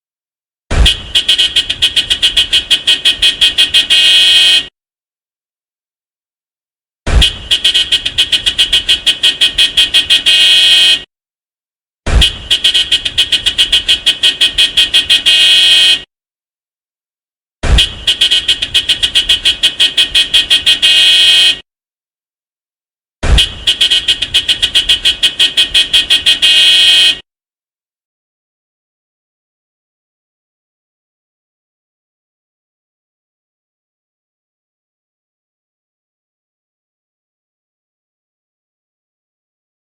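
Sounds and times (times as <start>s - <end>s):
car horn tooting: 0.7s - 4.7s, 7.1s - 11.1s, 12.1s - 16.1s, 17.6s - 21.6s, 23.2s - 27.2s.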